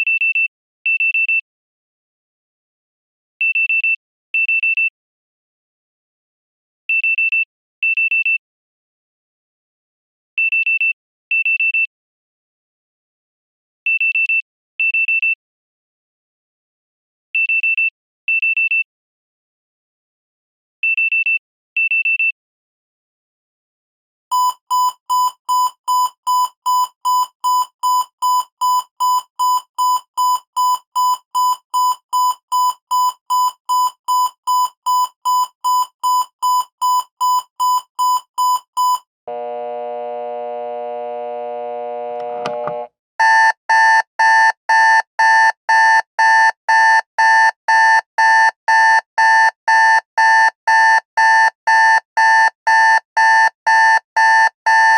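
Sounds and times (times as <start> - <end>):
rapid alarm clock beeping: 24.3 - 39.0, 43.2 - 54.9
pulsing buzz alarm: 38.8 - 42.9
steady low buzz: 39.3 - 42.9.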